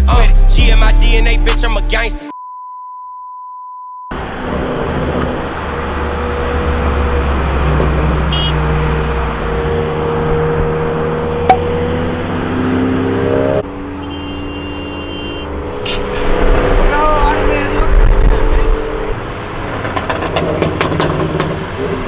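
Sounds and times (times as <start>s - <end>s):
car engine and exhaust: 4.1s - 22.0s.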